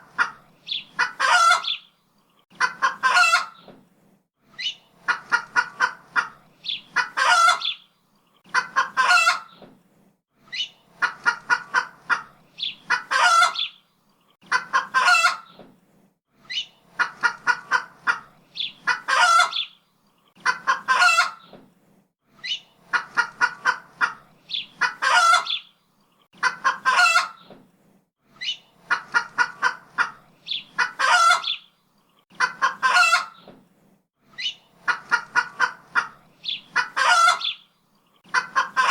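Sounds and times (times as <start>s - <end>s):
chicken clucking: 0.0s - 1.9s, 2.5s - 3.8s, 4.6s - 7.8s, 8.4s - 9.7s, 10.5s - 13.8s, 14.4s - 15.6s, 16.5s - 21.6s, 22.4s - 25.7s, 26.3s - 27.6s, 28.4s - 31.7s, 32.3s - 33.6s, 34.4s - 38.9s
chicken squawk: 0.1s - 1.9s, 2.6s - 3.7s, 4.6s - 7.8s, 8.5s - 9.6s, 10.5s - 13.8s, 14.5s - 15.6s, 16.5s - 19.8s, 20.4s - 21.5s, 22.4s - 25.7s, 26.4s - 27.5s, 28.4s - 31.7s, 32.4s - 33.5s, 34.4s - 37.7s, 38.3s - 38.9s.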